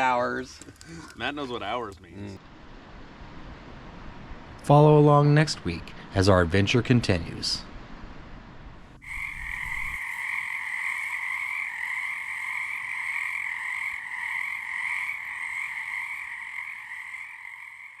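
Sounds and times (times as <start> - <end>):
chorus of frogs calling: 9.0 - 18.0.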